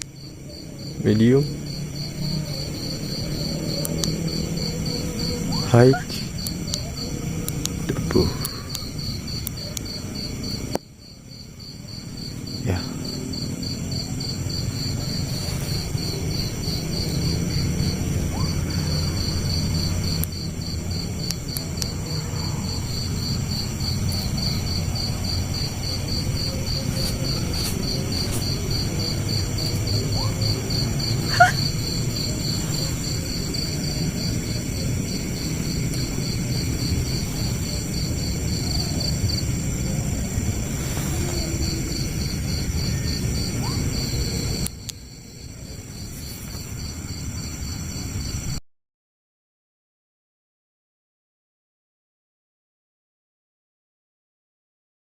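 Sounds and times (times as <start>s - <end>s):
crickets chirping: 0.0s - 48.6s
insect hum: 0.0s - 48.6s
low rumble: 12.3s - 44.6s.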